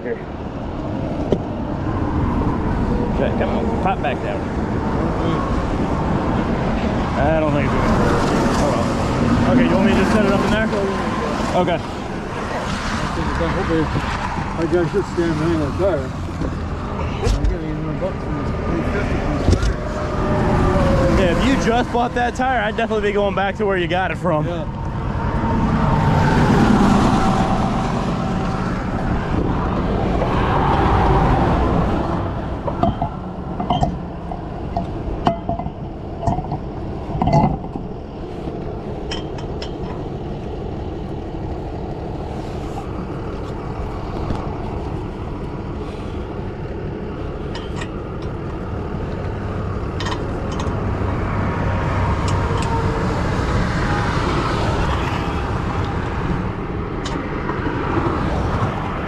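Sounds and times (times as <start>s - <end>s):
highway traffic noise: 0.0s - 59.0s.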